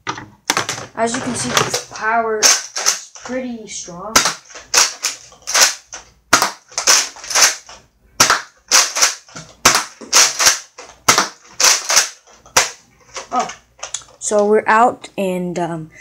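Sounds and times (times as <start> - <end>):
toy blaster shots snapping: 1.7 - 3.4, 4.2 - 12.8.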